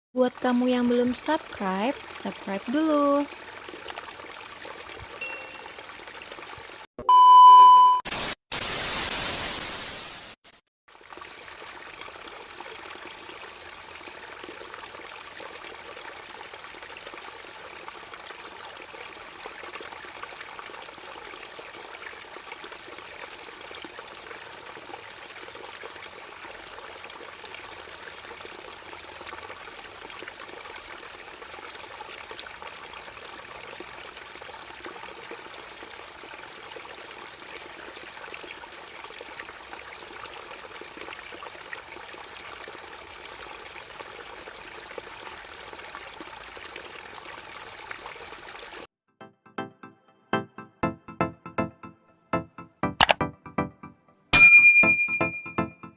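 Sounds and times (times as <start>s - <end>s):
trickling flowing water: 0.2s - 6.9s, 10.9s - 48.9s
short loud beep: 7.0s - 8.1s, 50.3s - 55.9s
burst of hiss: 8.1s - 10.4s.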